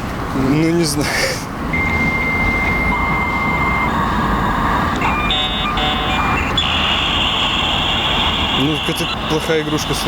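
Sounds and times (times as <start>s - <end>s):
low street traffic: 0.0s - 10.0s
dial-up modem tones: 1.8s - 4.0s.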